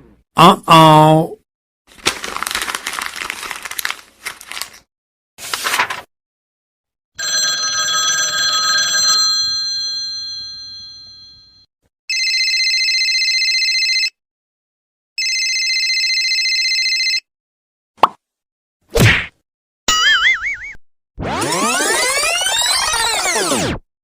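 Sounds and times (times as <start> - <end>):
telephone ringing: 7.2 - 14.2, 15.2 - 17.3.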